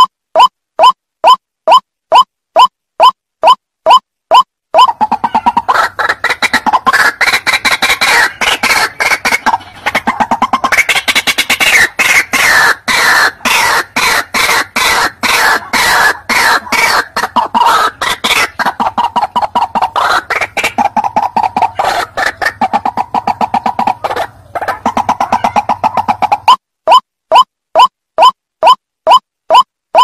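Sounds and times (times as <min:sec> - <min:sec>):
waterhen calling harsh notes: 0:04.8 - 0:28.3.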